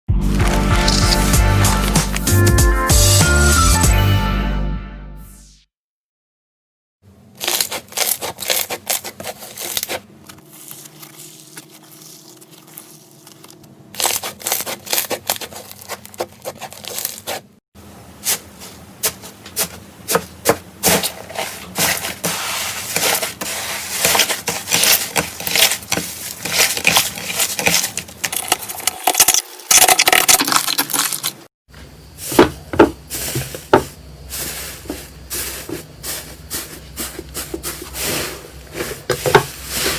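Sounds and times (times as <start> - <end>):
slime crackling and popping: 0.3 - 2.3.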